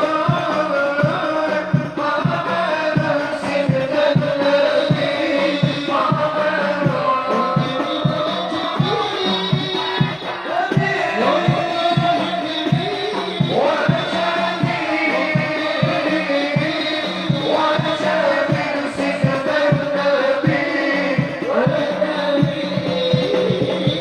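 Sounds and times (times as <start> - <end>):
hand drums beating: 0.0 - 24.0
men chanting devotional song: 0.0 - 24.0.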